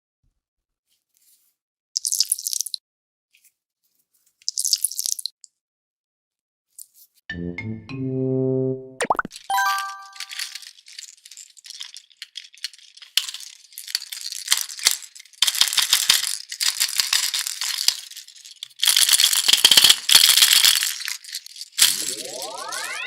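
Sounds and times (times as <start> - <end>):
upward sweeping sound effect: 7.3 - 10.2, 21.8 - 23.0
squeezed stress balls crackling: 9.2 - 23.0.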